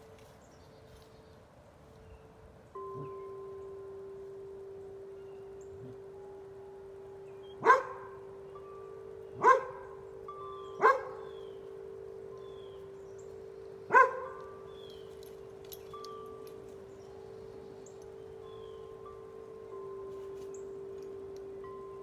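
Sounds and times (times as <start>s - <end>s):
wind chimes ringing: 0.0s - 22.0s
dog barking: 7.6s - 8.1s, 9.4s - 9.9s, 10.8s - 11.2s, 13.9s - 14.4s.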